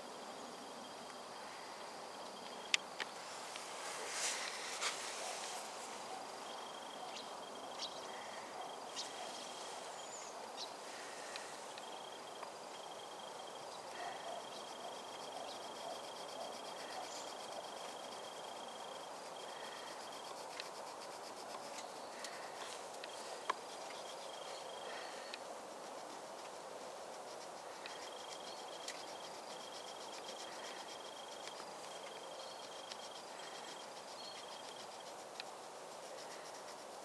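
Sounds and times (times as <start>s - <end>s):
insects chirping: 0.0s - 37.0s
rapid high insect trill: 0.3s - 37.0s
steady hiss: 1.2s - 13.9s.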